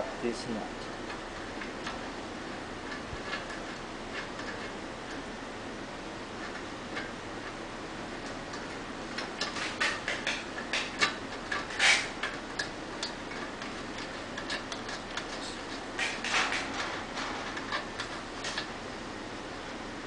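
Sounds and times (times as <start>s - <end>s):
metal clicks and scrapes: 2.8s - 5.3s, 6.4s - 18.8s.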